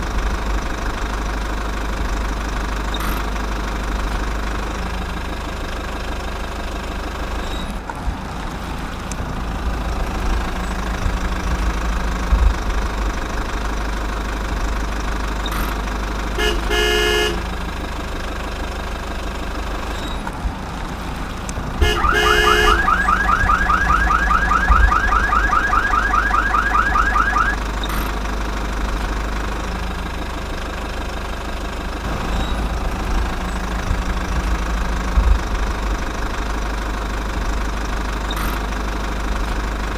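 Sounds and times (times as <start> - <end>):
toy engine idle sound effect: 0.0 - 7.8, 12.9 - 20.3, 21.8 - 39.9
short horn beeps: 16.4 - 17.5, 21.8 - 25.3
rapid warbling alarm: 21.8 - 28.0.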